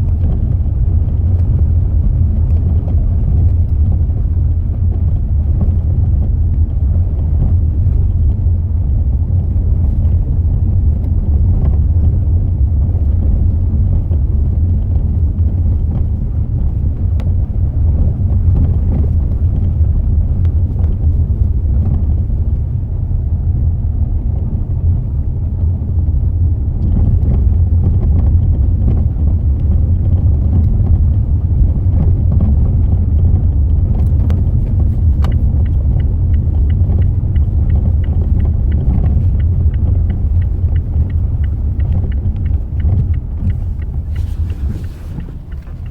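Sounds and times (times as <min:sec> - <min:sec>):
car road rumble: 0:00.0 - 0:45.9.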